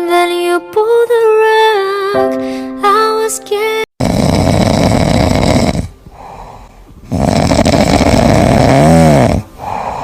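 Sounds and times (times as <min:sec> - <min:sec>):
cat snoring: 0:04.0 - 0:10.0.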